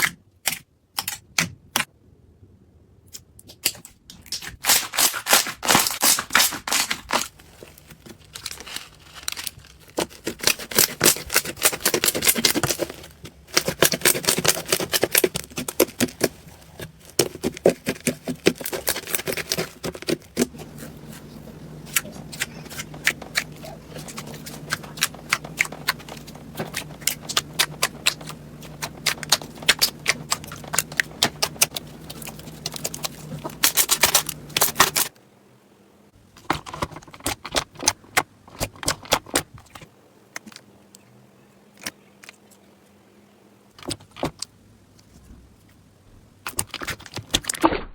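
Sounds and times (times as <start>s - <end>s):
low steady hum: 7.0s - 47.4s
slime crackling and popping: 8.3s - 35.1s.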